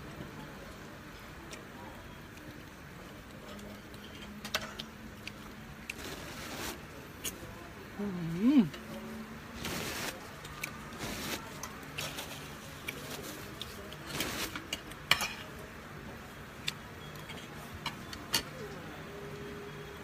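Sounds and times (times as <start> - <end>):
cutlery clinking on dishes: 14.1 - 15.6.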